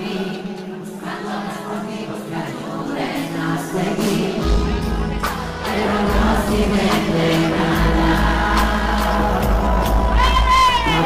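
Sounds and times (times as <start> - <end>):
pop song with singing: 0.0 - 11.0
heavy bass and drums: 4.4 - 11.0.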